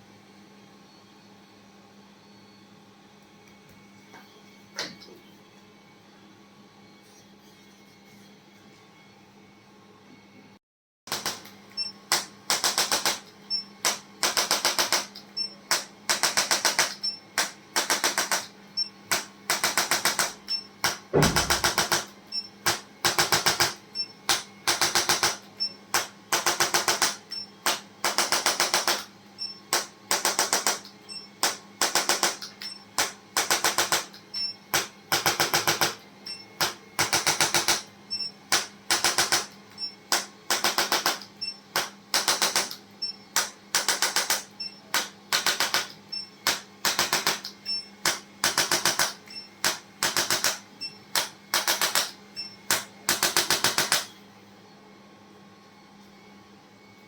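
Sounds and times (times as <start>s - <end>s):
steady low hum: 21.1s - 22.4s
deep thump: 21.2s - 21.8s
rapid mechanical clicking: 43.4s - 54.1s.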